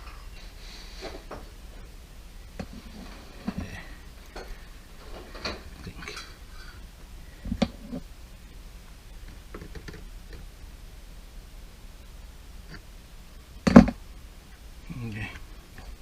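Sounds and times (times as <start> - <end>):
dishwasher parts clicking and knocking: 4.4 - 6.3.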